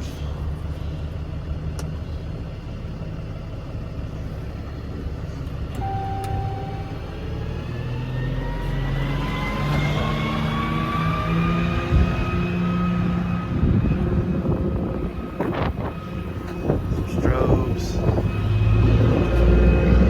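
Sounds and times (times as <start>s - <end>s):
diesel engine running: 0.0s - 20.0s
rising whine: 5.8s - 20.0s.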